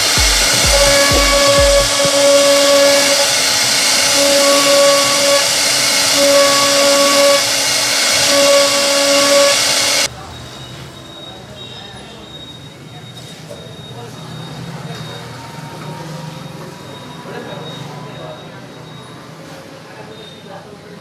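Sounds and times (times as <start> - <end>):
router whine: 0.0 - 10.1
wood router cutting hiss: 0.0 - 10.1.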